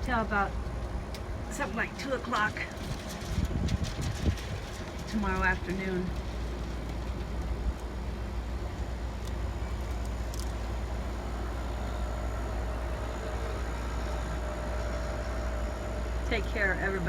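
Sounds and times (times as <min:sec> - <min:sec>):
wind buffeting microphone: 0:00.0 - 0:08.0
faint steady hum: 0:00.0 - 0:17.0.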